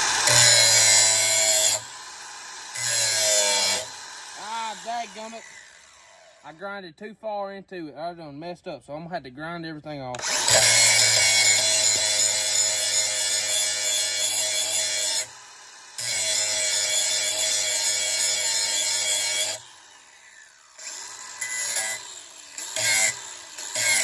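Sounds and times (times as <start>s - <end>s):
grinder wheel winding down: 0.0s - 6.5s, 10.2s - 13.4s
power grinder grinding steel: 0.0s - 6.6s, 10.2s - 24.0s.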